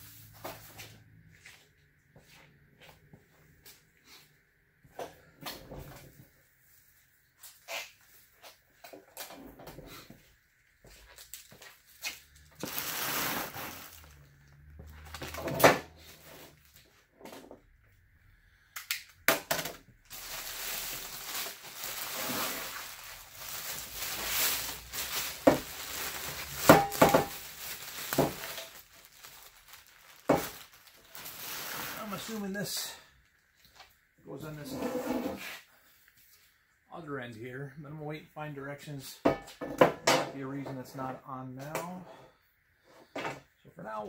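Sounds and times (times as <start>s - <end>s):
wrapping and cardboard rustling: 11.1s - 16.9s, 20.1s - 33.7s.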